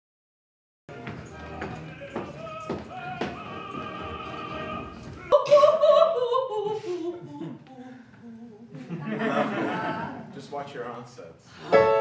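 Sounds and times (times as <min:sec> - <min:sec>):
operatic singing with vibrato: 0:00.9 - 0:08.8.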